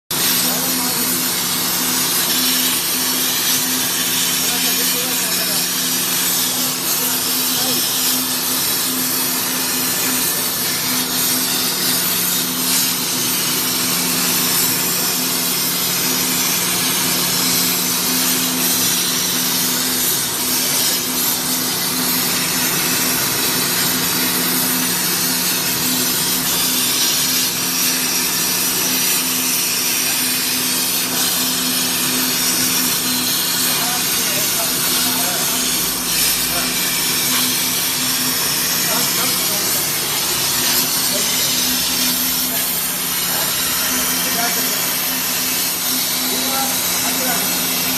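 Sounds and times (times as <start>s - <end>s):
plasma torch cutting metal: 0.1s - 47.9s.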